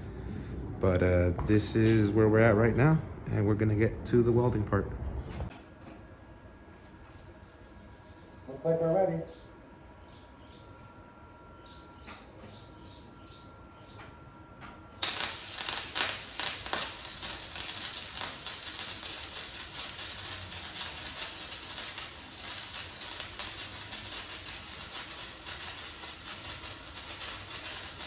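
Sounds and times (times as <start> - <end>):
electric arc welding crackling hiss: 15.0 - 28.0.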